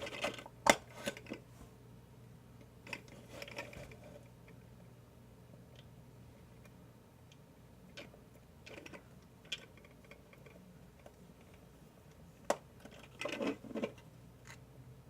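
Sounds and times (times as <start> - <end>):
plastic parts clicking and crinkling: 0.0 - 1.4, 2.8 - 4.6, 7.9 - 14.6.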